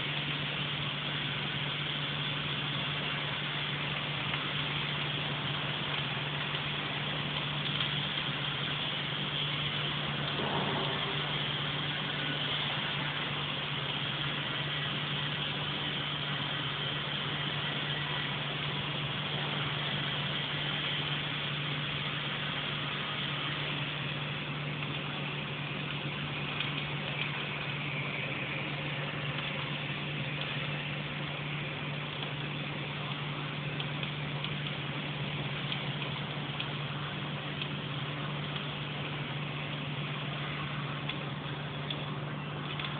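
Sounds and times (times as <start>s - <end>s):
welding machine humming and hissing: 0.0s - 42.9s.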